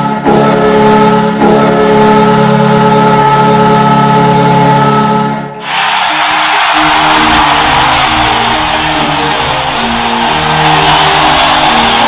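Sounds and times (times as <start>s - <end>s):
background music: 0.0s - 12.0s
goal horn multi-tone chord: 0.0s - 12.0s
crowd noise: 5.6s - 12.0s.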